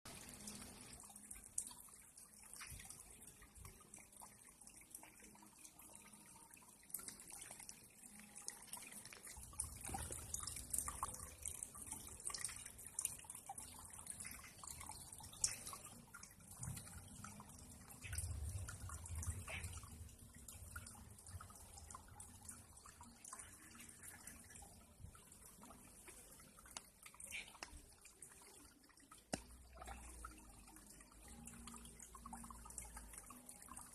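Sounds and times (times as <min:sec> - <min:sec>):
water dripping: 0:00.1 - 0:33.9.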